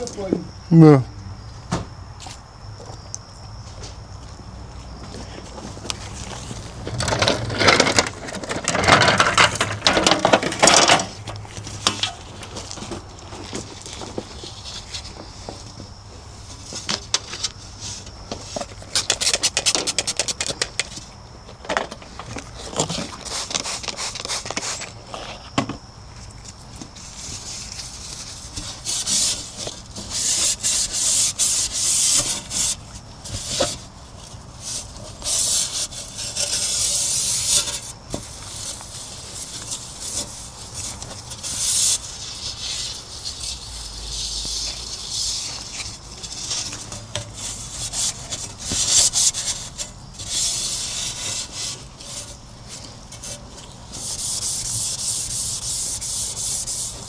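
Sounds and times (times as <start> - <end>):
scrubbing and wiping surfaces: 27.0 - 33.8, 34.6 - 57.0.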